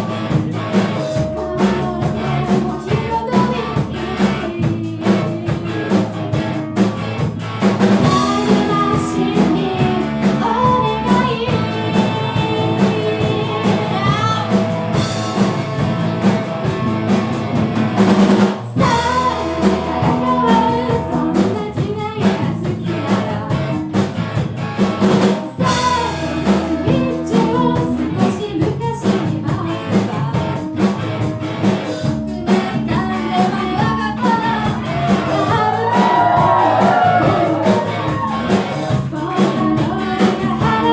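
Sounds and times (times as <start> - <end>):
person singing: 0.0 - 6.5, 8.0 - 14.7, 18.6 - 23.9, 25.4 - 30.9, 32.3 - 40.9
bass: 0.0 - 40.9
drum kit beat: 0.0 - 40.9
guitar: 0.0 - 40.9.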